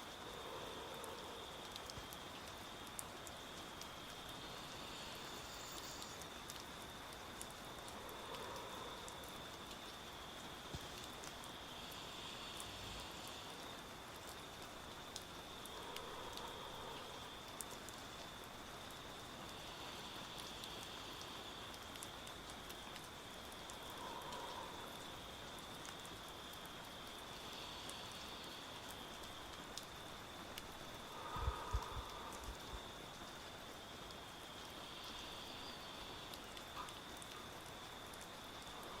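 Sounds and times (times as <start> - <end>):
steady rain pattering: 0.0 - 39.0
man breathing deeply: 23.6 - 25.4, 30.9 - 33.5.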